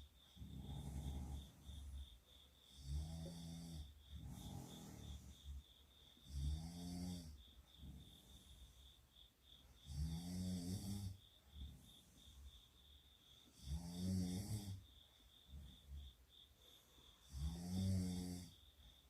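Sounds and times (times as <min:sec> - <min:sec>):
girl snoring loudly: 0:00.4 - 0:01.8, 0:02.7 - 0:05.6, 0:06.2 - 0:08.5, 0:09.8 - 0:11.2, 0:13.6 - 0:14.9, 0:17.2 - 0:18.6
soft breathing: 0:03.8 - 0:06.2, 0:15.0 - 0:17.3.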